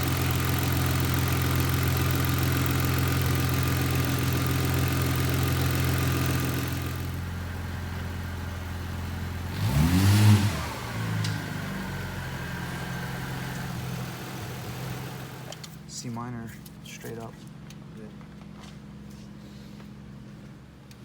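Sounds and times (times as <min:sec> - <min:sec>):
car engine revving and idling: 0:00.0 - 0:15.7.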